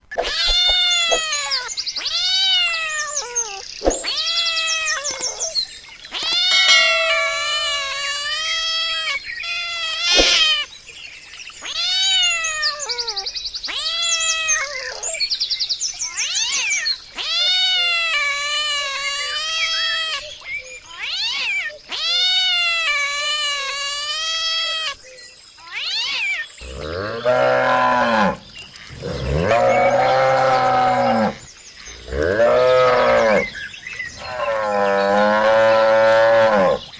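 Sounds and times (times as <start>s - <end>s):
cat meowing: 0.2s - 10.7s, 11.6s - 15.2s, 16.2s - 20.3s, 20.9s - 25.0s, 25.6s - 26.5s
cow mooing: 26.6s - 28.4s, 29.0s - 31.4s, 34.3s - 36.8s.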